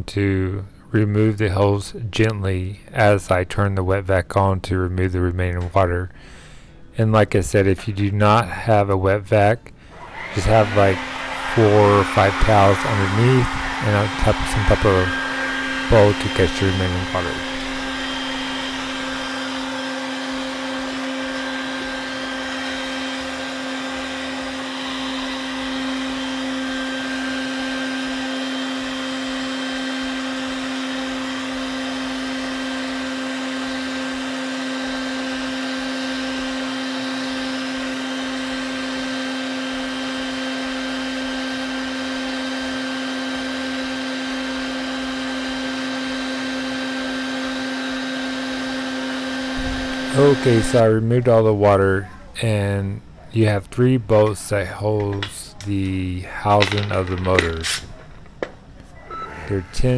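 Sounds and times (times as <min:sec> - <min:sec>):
wet vac motor running: 0:09.9 - 0:50.9.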